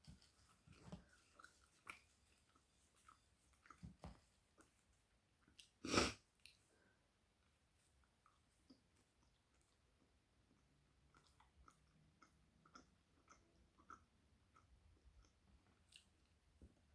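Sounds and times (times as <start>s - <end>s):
chewing mouth clicks and smacks: 0.8s - 3.9s, 5.4s - 6.6s, 10.5s - 16.4s.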